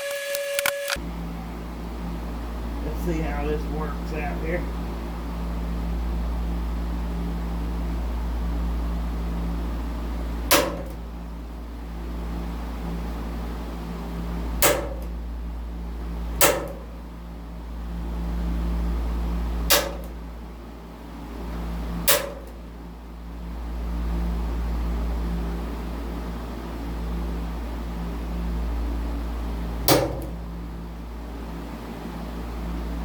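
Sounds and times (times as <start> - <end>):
steady low hum: 0.0 - 33.0
sharp snaps on sheet metal: 10.5 - 11.0, 14.6 - 15.2, 16.4 - 16.9, 19.7 - 20.2, 22.0 - 22.6, 29.9 - 30.4.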